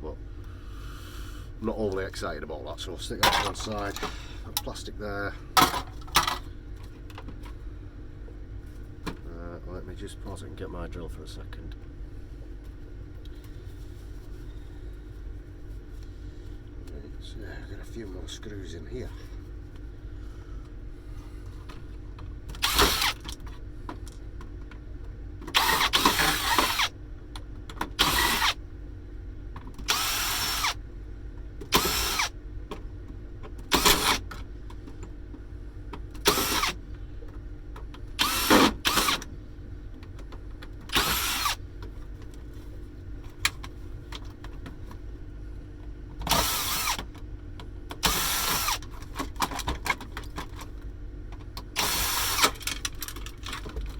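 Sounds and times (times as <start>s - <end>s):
power drill whining: 22.6s - 23.2s, 25.5s - 26.9s, 28.0s - 28.6s, 29.9s - 30.8s, 31.7s - 32.3s, 33.7s - 34.2s, 36.2s - 36.8s, 38.2s - 39.2s, 40.9s - 41.6s, 46.3s - 47.0s, 48.0s - 48.8s, 51.8s - 52.6s.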